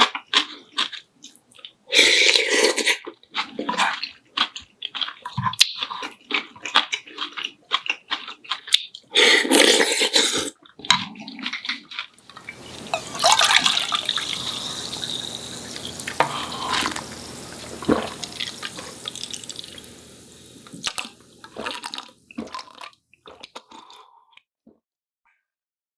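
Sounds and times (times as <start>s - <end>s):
tap water running: 12.2s - 22.4s.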